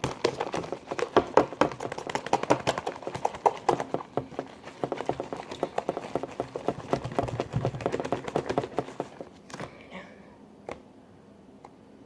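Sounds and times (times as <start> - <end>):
slime squelching: 0.0 - 9.4.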